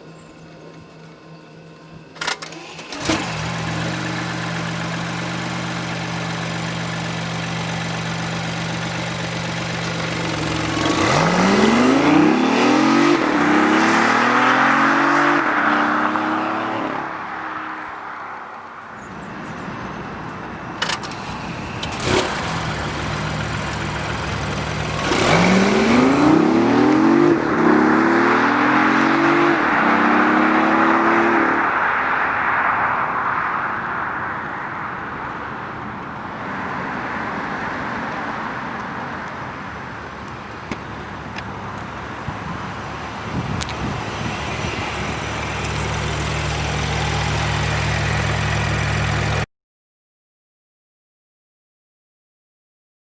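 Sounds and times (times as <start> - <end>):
road and wind noise: 0.0 - 49.5
car engine accelerating: 1.9 - 17.8, 19.0 - 32.1, 42.4 - 49.5.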